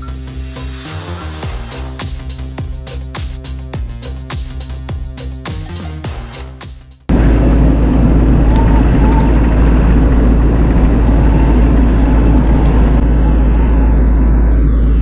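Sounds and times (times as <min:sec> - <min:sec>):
engine running loudly: 0:07.1 - 0:15.0.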